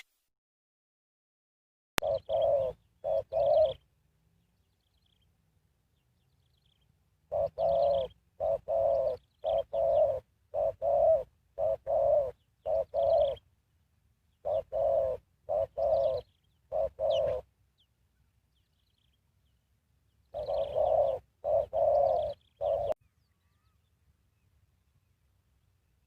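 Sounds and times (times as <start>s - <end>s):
dove cooing: 2.0s - 3.9s, 7.3s - 13.4s, 14.4s - 17.5s, 20.3s - 23.0s.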